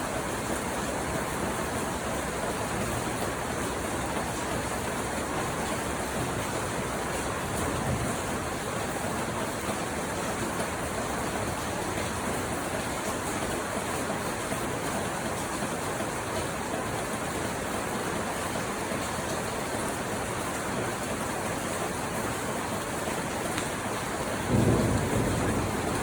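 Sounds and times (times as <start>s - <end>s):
steady rain hiss: 0.0s - 26.0s.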